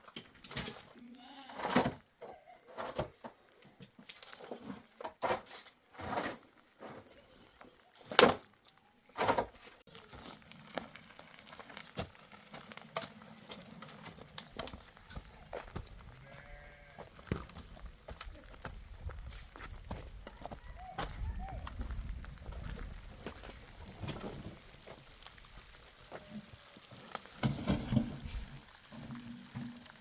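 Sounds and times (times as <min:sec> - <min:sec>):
sheep or goats bleating: 0:01.0 - 0:01.7, 0:16.1 - 0:17.3.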